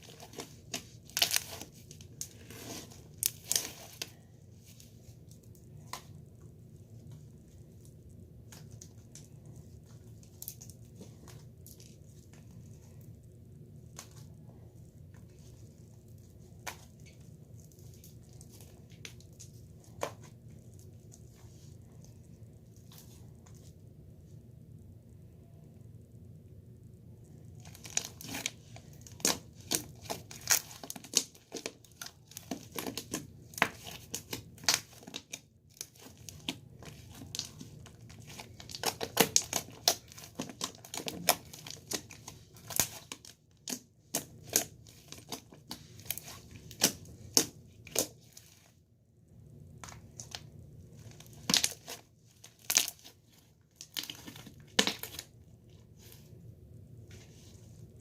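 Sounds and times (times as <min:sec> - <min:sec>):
slime crackling and popping: 0:00.0 - 0:04.2, 0:27.6 - 0:48.7, 0:49.7 - 0:55.4.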